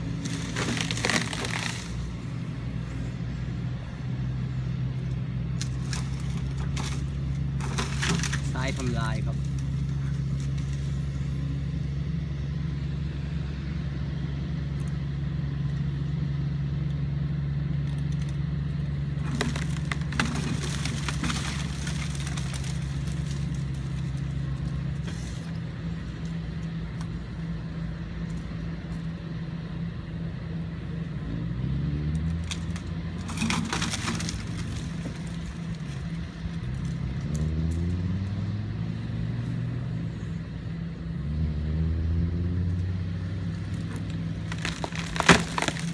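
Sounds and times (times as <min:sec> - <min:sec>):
wood cracking and snapping: 0:00.0 - 0:11.8, 0:19.2 - 0:26.4, 0:32.0 - 0:38.1, 0:43.5 - 0:45.9
excavator diesel engine running: 0:00.0 - 0:17.9.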